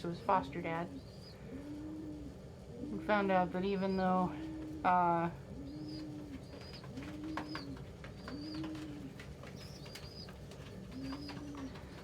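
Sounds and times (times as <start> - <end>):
pigeons cooing: 0.0 - 12.0.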